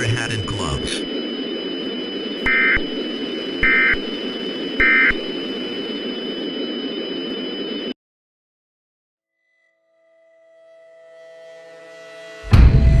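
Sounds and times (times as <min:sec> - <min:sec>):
buzzing alert data tones: 0:00.0 - 0:06.1
static hiss: 0:00.0 - 0:07.9
thin high whine: 0:00.0 - 0:08.0.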